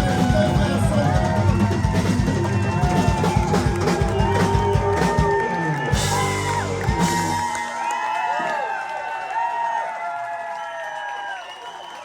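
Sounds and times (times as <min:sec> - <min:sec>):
person singing: 0:00.0 - 0:07.6
live rock band playing: 0:00.0 - 0:08.0
crowd whooping: 0:00.0 - 0:12.0.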